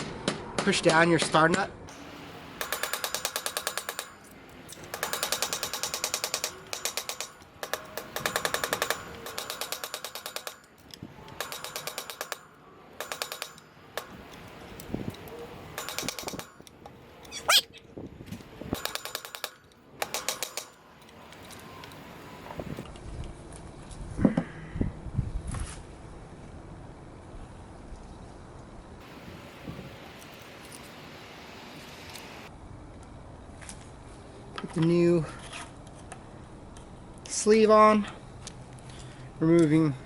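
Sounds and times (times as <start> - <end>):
rapid clicking bursts: 2.6 - 14.4, 15.8 - 16.7, 18.7 - 20.8.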